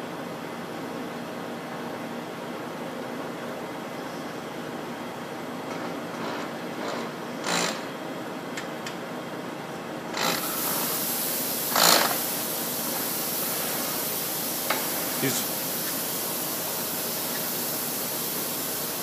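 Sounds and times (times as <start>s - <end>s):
high hiss: 10.4s - 19.0s.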